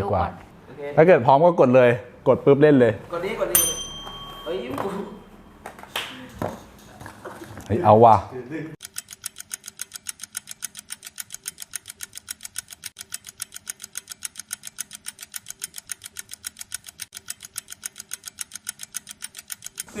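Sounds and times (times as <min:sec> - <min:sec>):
countdown timer ticking: 0:08.8 - 0:20.0.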